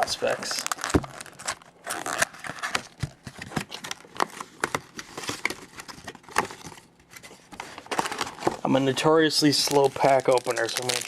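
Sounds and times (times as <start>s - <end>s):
card pack wrapper crinkling and tearing: 0.0s - 6.8s, 7.6s - 11.0s.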